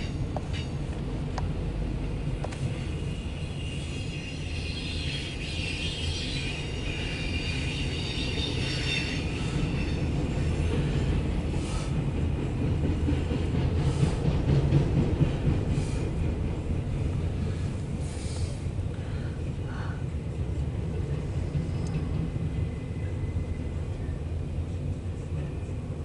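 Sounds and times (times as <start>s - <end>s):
train wheels rumbling on rail: 0.0s - 26.0s
high wheel squeal: 2.7s - 11.9s.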